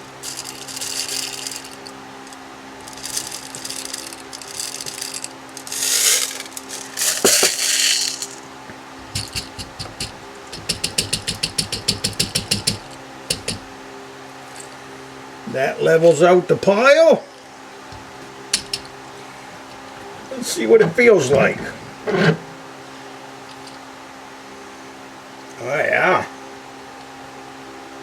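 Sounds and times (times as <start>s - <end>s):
birdshot pouring through funnel: 2.9s - 8.4s
fast sharp ticks: 9.1s - 13.7s.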